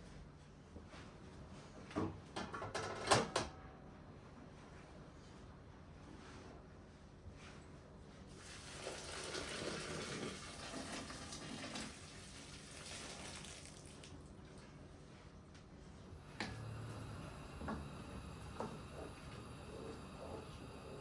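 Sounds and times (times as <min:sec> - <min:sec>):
tap water running into sink: 0:08.4 - 0:14.1.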